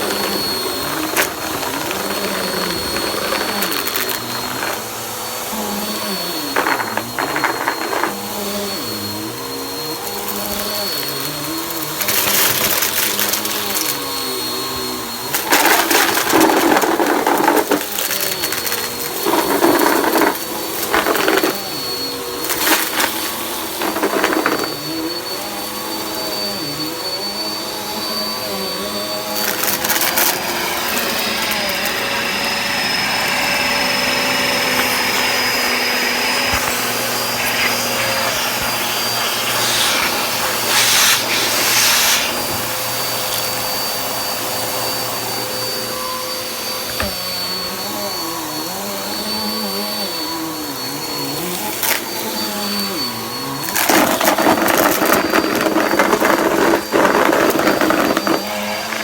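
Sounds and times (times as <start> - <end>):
debris rattling in vacuum: 0.0 - 59.0
vacuum cleaner motor whine: 0.0 - 59.0.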